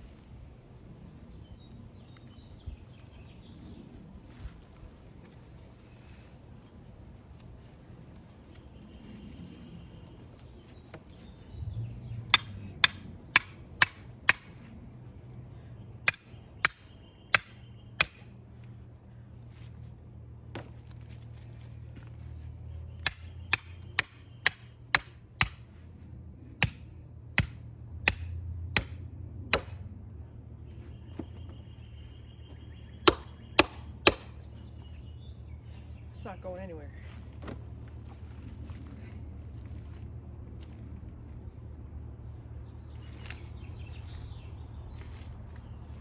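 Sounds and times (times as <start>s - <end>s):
hammer striking metal stakes: 12.3s - 14.7s, 16.1s - 18.4s, 23.0s - 25.7s, 26.6s - 29.9s, 33.0s - 34.5s.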